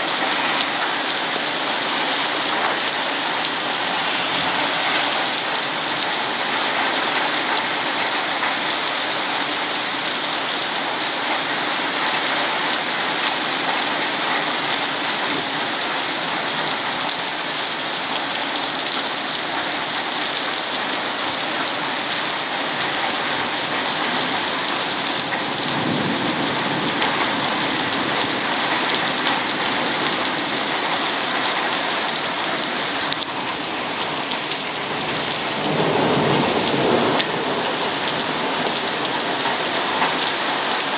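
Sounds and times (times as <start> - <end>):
heavy rain pouring: 0.0 - 40.9
low thunder rumble: 25.4 - 28.4, 34.2 - 39.6.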